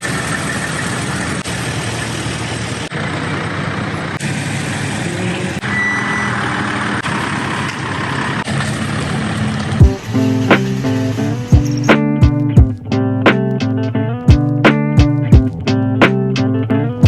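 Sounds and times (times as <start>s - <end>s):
loud mechanical noise: 0.0s - 12.0s
steady beep: 5.6s - 6.5s.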